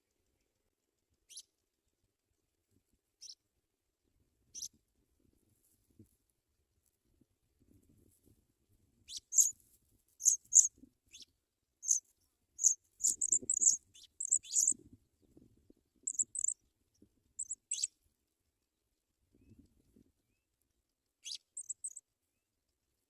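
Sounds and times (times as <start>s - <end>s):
birds chirping high-pitched: 9.1s - 9.5s, 10.2s - 11.2s, 12.6s - 14.8s, 16.1s - 16.6s, 17.4s - 17.9s, 21.2s - 22.0s.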